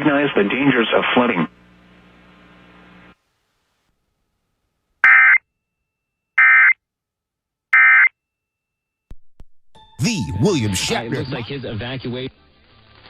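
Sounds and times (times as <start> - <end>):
digital data tone bursts: 5.0 - 5.4.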